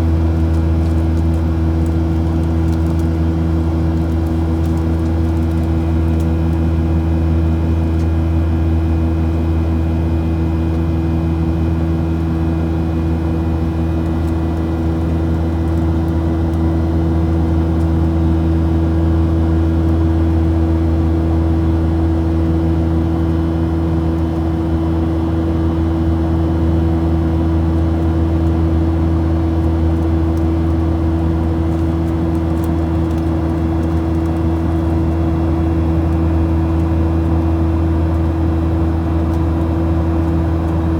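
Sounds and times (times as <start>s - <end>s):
aircraft cabin drone: 26.9s - 40.9s.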